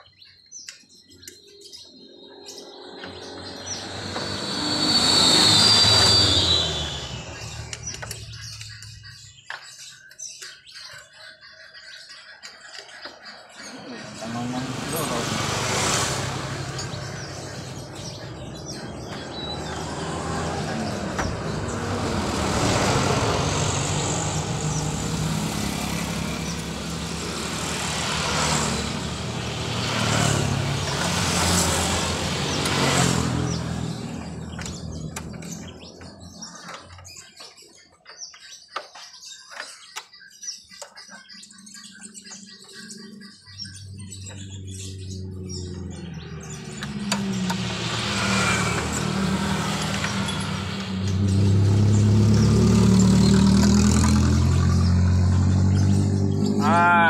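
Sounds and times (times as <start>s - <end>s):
scattered clicks and chirps: 0.0s - 52.5s
vehicle engine running: 13.8s - 37.2s, 43.7s - 57.0s.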